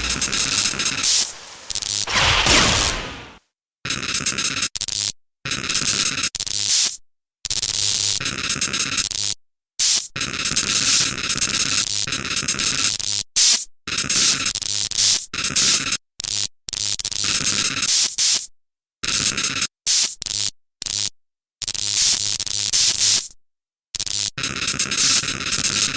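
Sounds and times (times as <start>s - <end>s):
loud static blasts: 0.0s - 3.4s.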